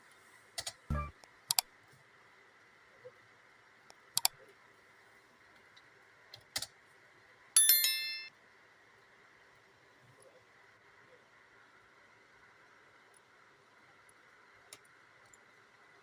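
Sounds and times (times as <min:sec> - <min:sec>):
sharp clicks: 0:00.6 - 0:01.6.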